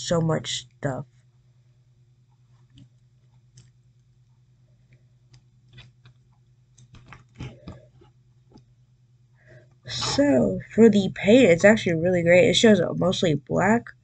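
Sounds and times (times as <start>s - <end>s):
low steady hum: 0.0s - 14.0s.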